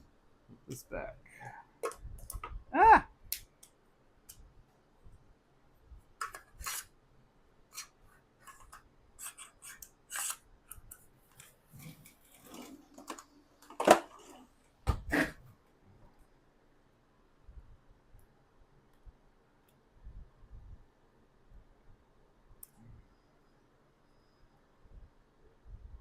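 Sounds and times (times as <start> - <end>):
clicks and scrapes of handled parts: 7.7 - 14.4.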